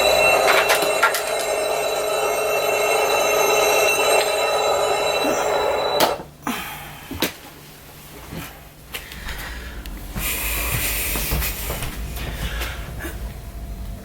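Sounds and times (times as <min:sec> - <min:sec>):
mouth-imitated alarm ringing: 0:00.0 - 0:06.2.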